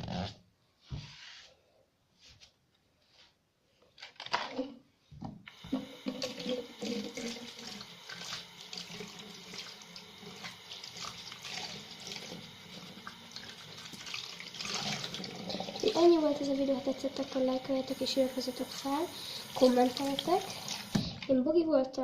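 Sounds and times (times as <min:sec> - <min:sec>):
tap water running into sink: 0:05.5 - 0:21.3.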